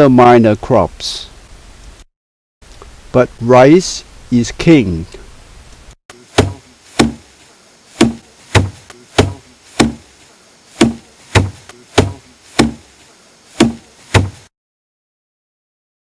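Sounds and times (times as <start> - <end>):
heavy knocks: 6.4 - 7.2, 8.0 - 10.0, 10.8 - 12.8, 13.6 - 14.4.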